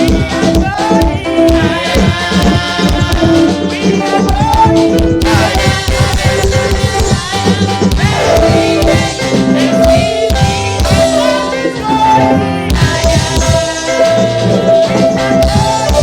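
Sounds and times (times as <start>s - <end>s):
steady drum beat: 0.0s - 16.0s
upbeat gospel music: 0.0s - 16.0s.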